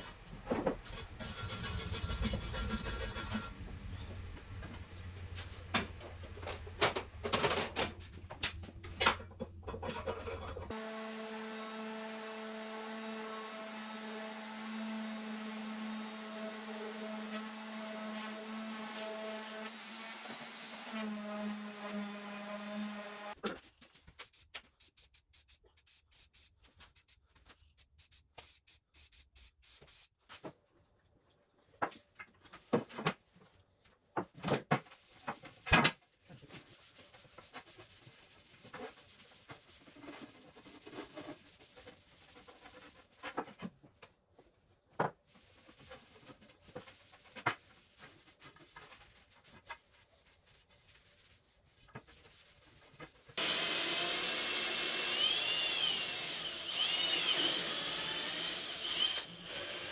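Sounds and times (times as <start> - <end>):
power tool whine: 10.7 - 23.4, 53.4 - 59.9.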